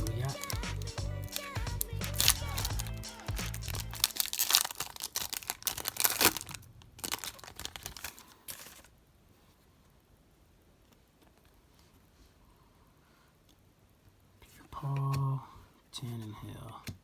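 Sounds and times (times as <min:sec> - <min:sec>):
background music with bass line: 0:00.0 - 0:04.1
plastic wrapper crinkling and tearing: 0:00.0 - 0:08.9.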